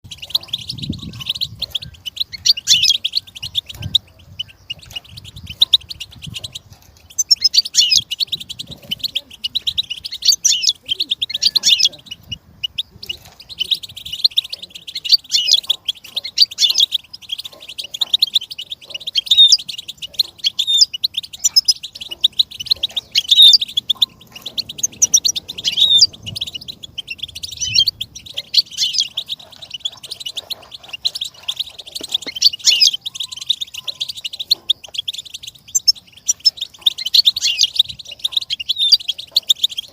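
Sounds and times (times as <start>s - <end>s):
bird twittering song: 0.0s - 39.9s.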